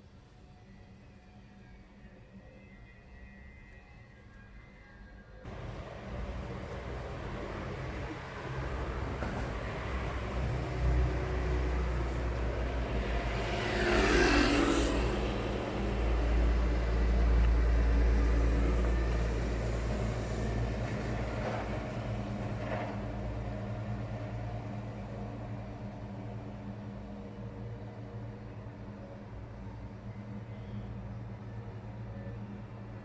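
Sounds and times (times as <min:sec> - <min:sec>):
vehicle passing by: 0:05.5 - 0:29.6
road traffic rumble: 0:05.5 - 0:33.0.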